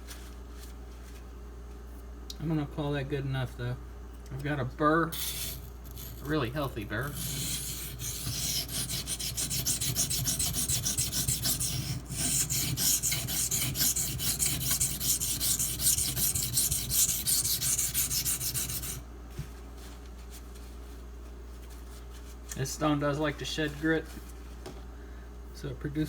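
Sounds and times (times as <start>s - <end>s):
knife scraping on whetstone: 5.2s - 19.0s.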